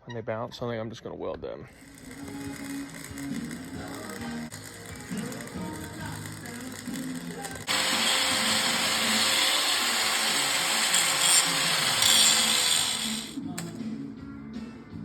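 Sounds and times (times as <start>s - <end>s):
angle grinder running: 1.8s - 13.8s.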